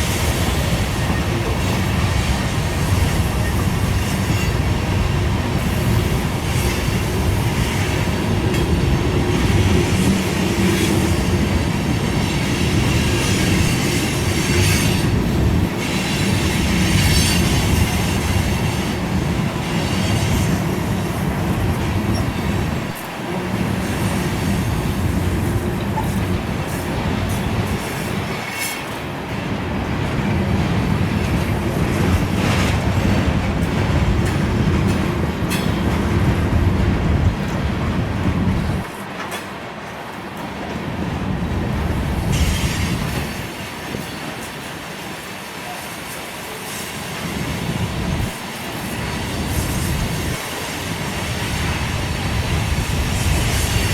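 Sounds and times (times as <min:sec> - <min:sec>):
wheels clacking over rail joints: 0:19.6 - 0:44.8.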